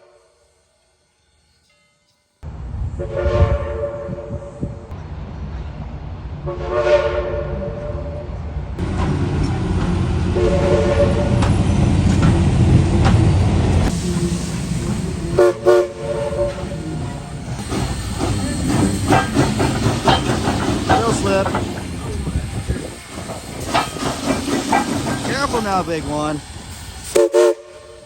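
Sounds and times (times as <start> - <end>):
low rumble of train running: 0.0 - 28.0
steam whistle blowing: 3.0 - 4.8, 6.5 - 8.2, 10.4 - 11.4, 13.9 - 18.3, 27.1 - 28.0.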